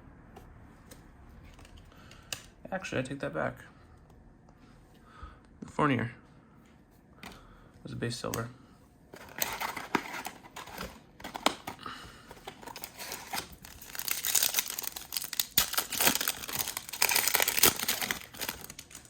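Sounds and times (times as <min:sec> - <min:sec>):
wrapper tearing and crinkling: 0:12.4 - 0:19.0.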